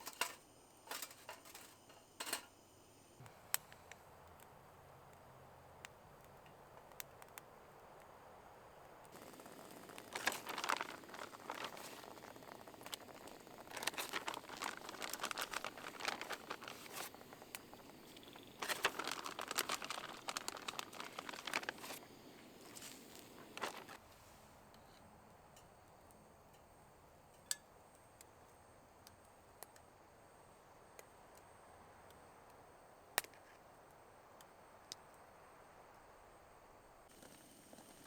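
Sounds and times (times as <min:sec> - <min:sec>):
crinkly rustling and crackling: 0:00.0 - 0:02.5, 0:09.1 - 0:24.4
steady soft hiss: 0:00.0 - 0:38.0.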